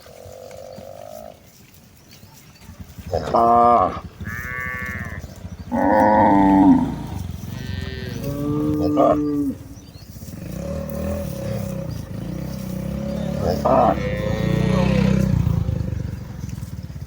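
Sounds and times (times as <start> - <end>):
cows mooing: 3.0 - 16.3.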